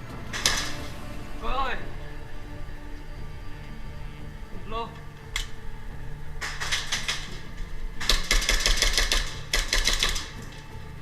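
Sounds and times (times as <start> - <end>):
airsoft gun firing: 0.3 - 0.9, 6.4 - 10.6.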